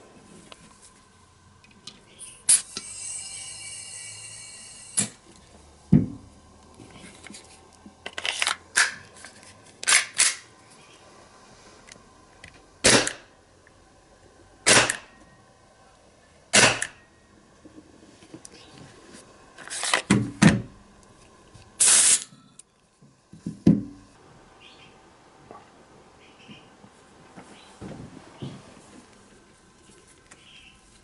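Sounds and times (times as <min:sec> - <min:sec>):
gas hissing: 0:02.2 - 0:05.3, 0:21.8 - 0:22.3
airsoft gun shots: 0:12.8 - 0:13.3, 0:14.6 - 0:15.1, 0:16.5 - 0:17.0.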